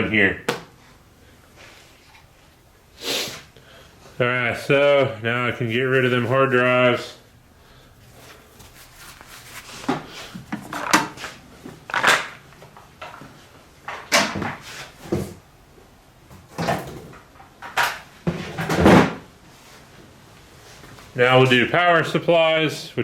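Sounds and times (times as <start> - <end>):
handling noise: 8.1 - 15.4.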